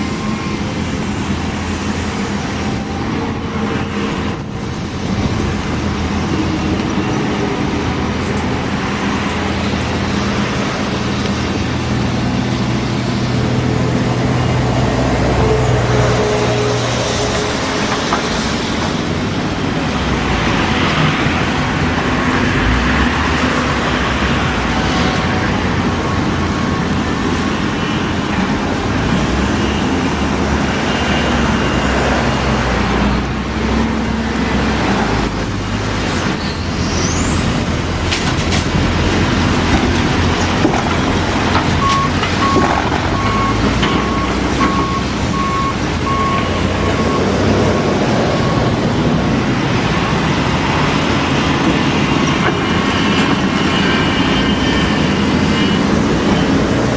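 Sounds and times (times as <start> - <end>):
diesel engine rumbling: 0.0 - 56.9
repeating beeping alarm: 43.2 - 48.8, 52.3 - 56.8.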